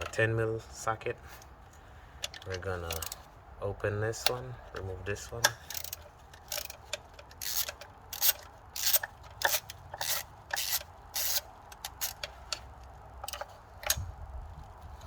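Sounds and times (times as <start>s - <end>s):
ratchet wrench ratcheting: 2.3s - 3.2s, 5.5s - 12.4s.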